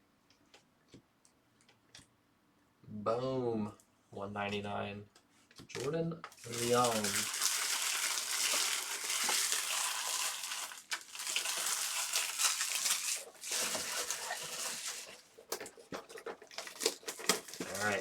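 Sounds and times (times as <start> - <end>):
card packaging crinkling: 5.8 - 18.0.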